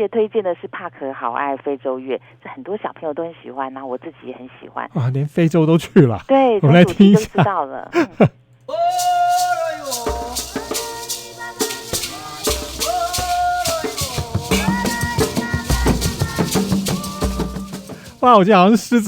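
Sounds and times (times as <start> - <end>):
shaker rhythm: 8.7 - 19.0
low drum beats: 11.8 - 18.4.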